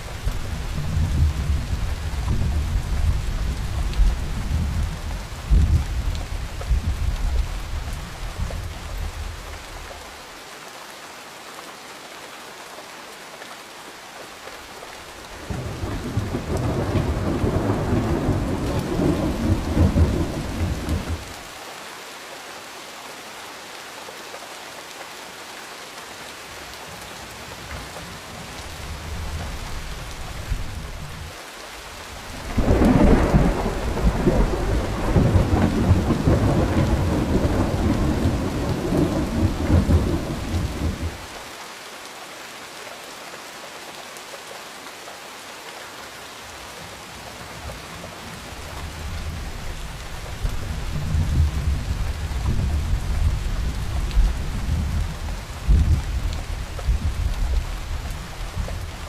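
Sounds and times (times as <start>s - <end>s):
steady rain: 0.0s - 59.0s
rolling thunder: 15.5s - 21.3s, 32.4s - 41.2s.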